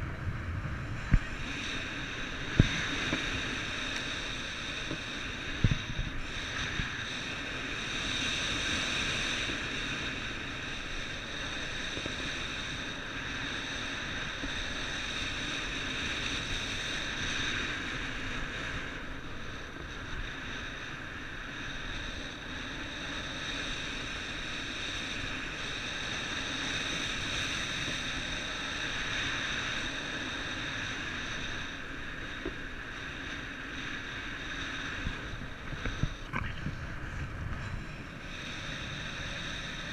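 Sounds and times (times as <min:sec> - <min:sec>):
wind blowing: 0:29.4 - 0:39.9.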